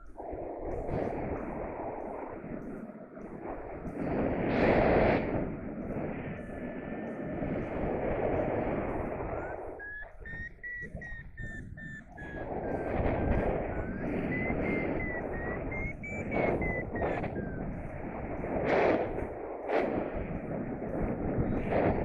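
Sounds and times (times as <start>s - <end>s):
wind rushing over microphone: 0.0s - 22.0s
variometer beeping: 9.3s - 17.8s.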